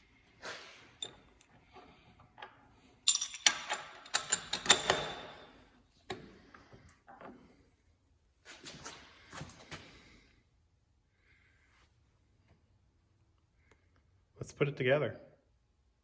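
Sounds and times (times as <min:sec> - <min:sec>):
metal parts clinking: 0:03.0 - 0:05.6.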